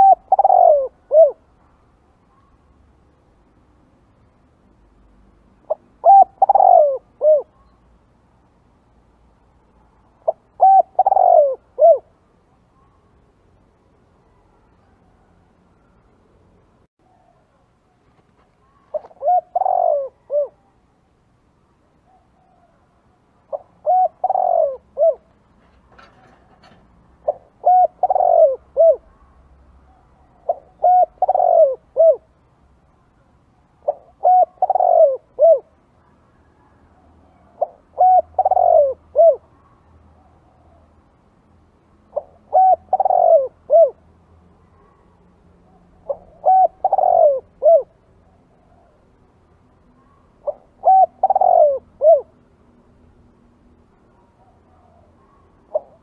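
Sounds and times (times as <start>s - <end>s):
dove cooing: 0.0s - 1.6s, 5.7s - 7.6s, 10.2s - 12.2s, 18.5s - 20.8s, 23.5s - 29.3s, 29.9s - 32.4s, 33.8s - 35.8s, 36.5s - 39.7s, 42.1s - 44.0s, 45.6s - 49.0s, 50.0s - 52.4s, 54.2s - 56.0s.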